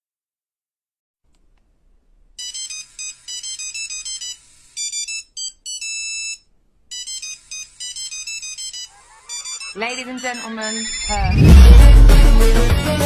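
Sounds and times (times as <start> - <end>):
electronic phone ringtone: 2.4 - 11.4.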